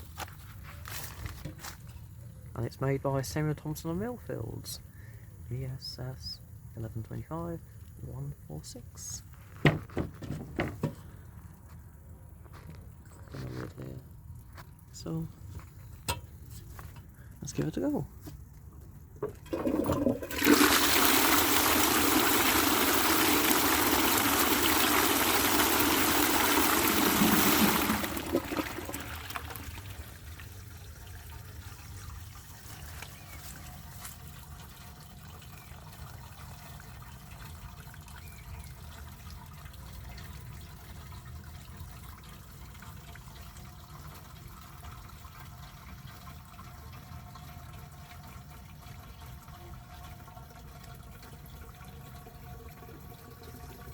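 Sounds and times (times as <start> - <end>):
faint water trickle: 0.0 - 9.5, 10.9 - 53.9
water rushing through toilet cistern: 19.2 - 33.0, 34.4 - 53.9.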